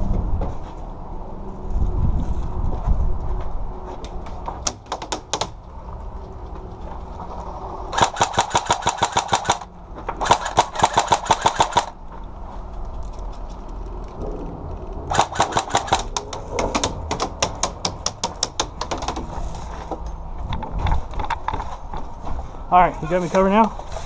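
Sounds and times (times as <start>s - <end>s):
airsoft gun firing: 8.0s - 12.0s, 15.1s - 16.2s.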